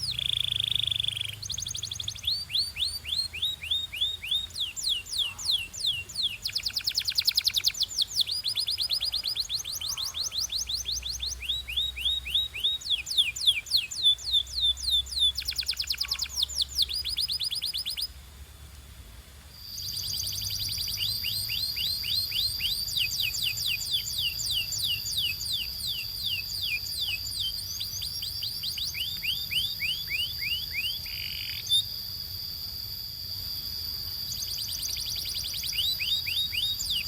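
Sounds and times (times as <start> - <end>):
canary singing trills: 0.0 - 18.2, 19.6 - 37.0.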